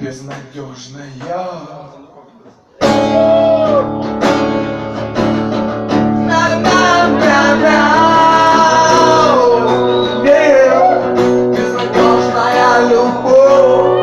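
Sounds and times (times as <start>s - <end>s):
acoustic guitar strumming: 2.8s - 14.0s
person singing: 6.2s - 14.0s.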